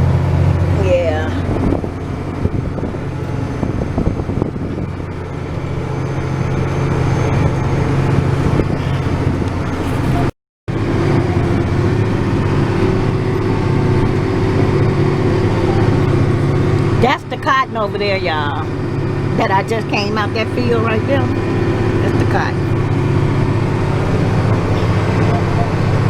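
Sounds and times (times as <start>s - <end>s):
vehicle engine running: 0.0s - 26.0s
steady hum: 10.9s - 26.0s.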